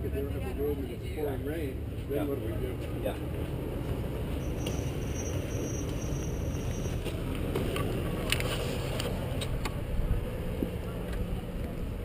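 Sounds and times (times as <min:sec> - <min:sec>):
motorcycle engine rumbling: 0:01.7 - 0:12.0.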